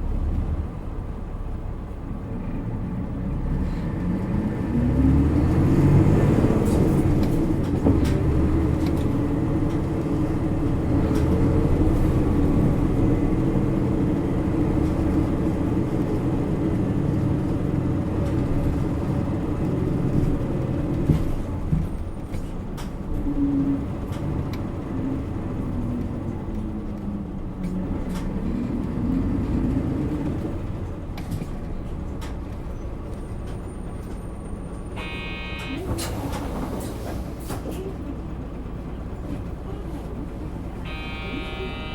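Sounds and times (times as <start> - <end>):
bus diesel engine: 0.0 - 41.9
short electronic tone: 35.0 - 35.8, 40.8 - 41.9.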